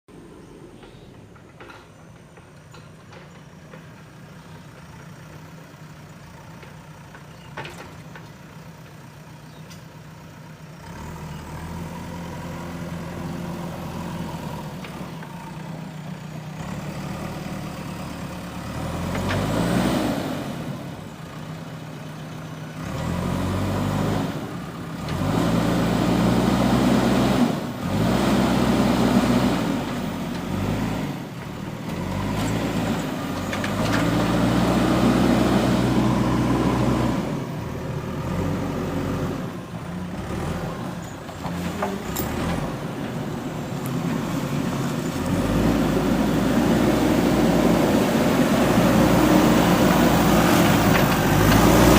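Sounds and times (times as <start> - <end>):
diesel engine revving: 10.5 - 51.9.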